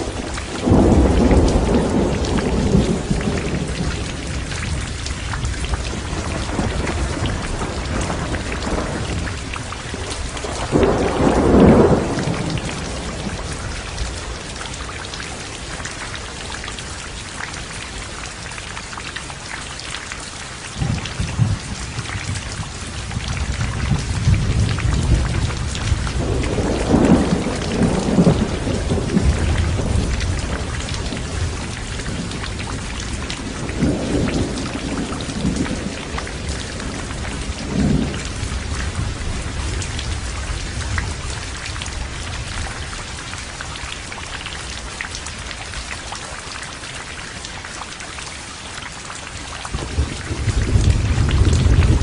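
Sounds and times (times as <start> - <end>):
thunder rumbling: 0.0 - 15.0, 20.8 - 43.7, 49.7 - 52.0
heavy rain falling: 0.0 - 52.0.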